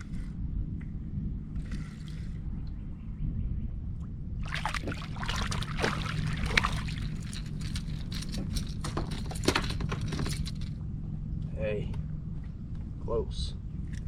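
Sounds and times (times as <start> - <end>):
steady low rumble: 0.0 - 14.0
water splashing and sloshing: 1.5 - 2.7, 3.9 - 10.8.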